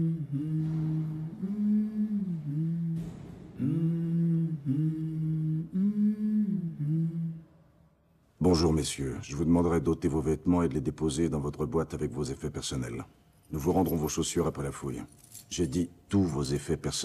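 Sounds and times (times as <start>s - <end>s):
low voice humming: 0.0s - 7.5s.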